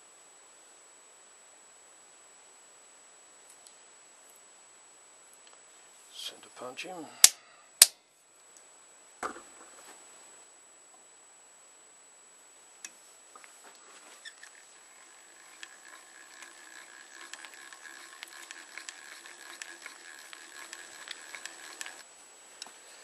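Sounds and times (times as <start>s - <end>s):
faint steady drill whine: 13.9s - 22.1s
hand drill grinding rivet: 14.0s - 22.1s.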